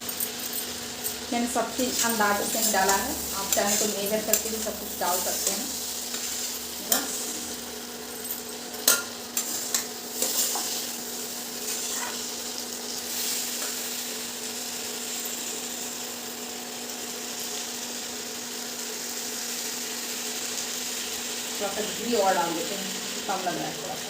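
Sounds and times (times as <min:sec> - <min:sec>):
ghee sizzling in a pan: 0:00.1 - 0:24.0.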